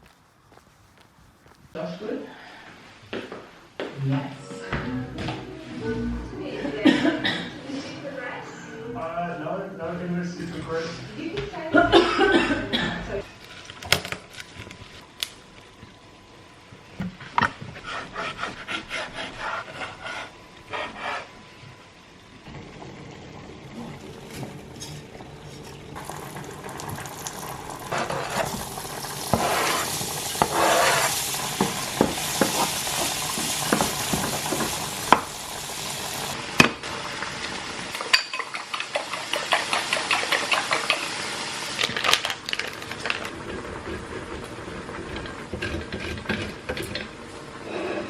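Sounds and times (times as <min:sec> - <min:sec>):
utensil stirring and scraping pan: 0:17.6 - 0:21.4, 0:27.8 - 0:35.3, 0:38.2 - 0:41.1, 0:45.0 - 0:47.1
food sizzling in a pan: 0:23.6 - 0:42.0.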